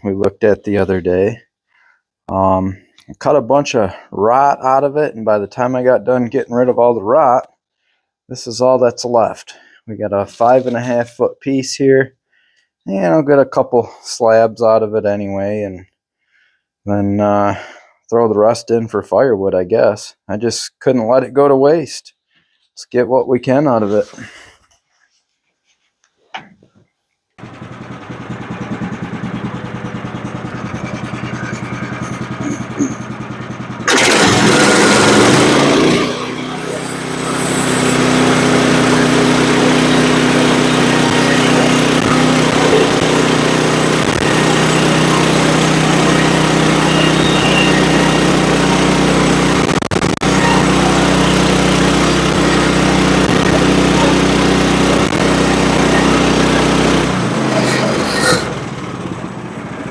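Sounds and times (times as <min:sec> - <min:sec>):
small gasoline engine running: 0:27.4 - 0:59.9.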